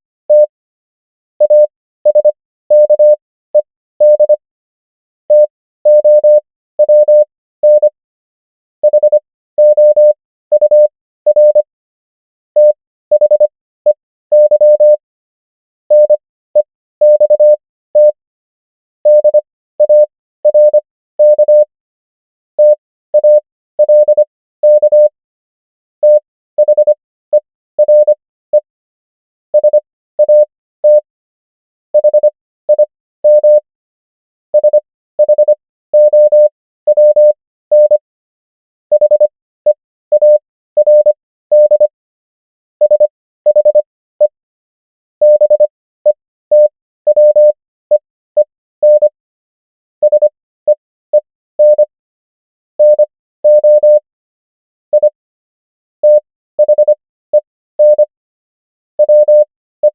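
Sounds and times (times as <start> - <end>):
morse code beeps: 0.3 - 0.5, 1.4 - 4.4, 5.3 - 8.0, 8.8 - 11.7, 12.6 - 15.0, 15.9 - 18.2, 19.1 - 21.7, 22.6 - 25.1, 26.0 - 28.7, 29.6 - 31.1, 32.0 - 33.6, 34.6 - 38.0, 38.9 - 41.9, 42.8 - 44.4, 45.2 - 49.2, 50.0 - 51.9, 52.8 - 54.0, 54.9 - 55.2, 56.0 - 57.0, 57.8 - 58.1, 59.0 - 59.9.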